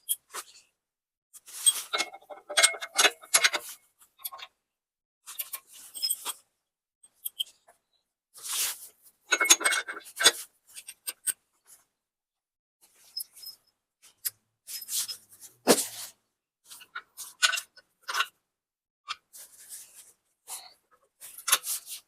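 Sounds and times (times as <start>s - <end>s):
metal parts scraping: 1.5s - 4.5s, 5.3s - 6.4s, 21.2s - 22.0s.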